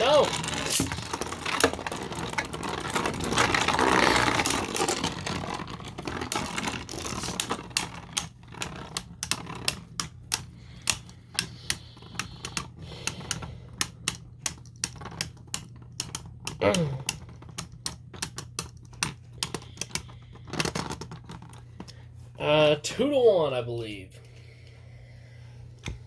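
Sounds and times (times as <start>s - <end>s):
spinning tops grinding and rattling: 0.0s - 16.6s
sharp plastic clicks: 6.3s - 20.8s.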